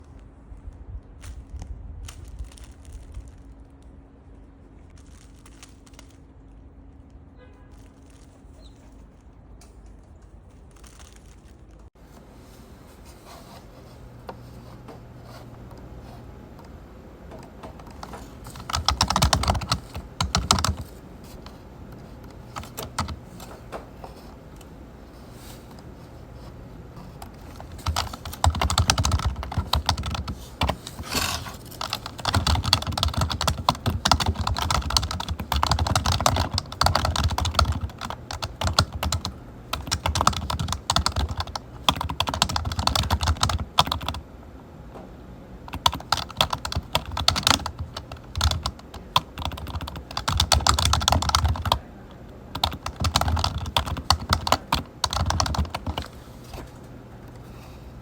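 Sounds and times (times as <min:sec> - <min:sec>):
typing on computer keyboard: 0:17.3 - 0:44.2, 0:45.7 - 0:51.9, 0:52.5 - 0:56.6.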